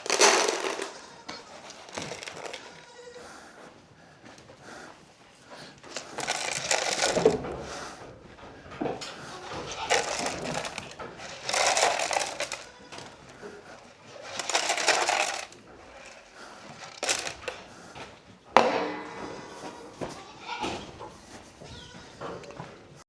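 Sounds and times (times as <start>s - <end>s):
dry grain pouring into can: 0.0s - 2.6s, 9.8s - 12.7s, 14.3s - 15.6s.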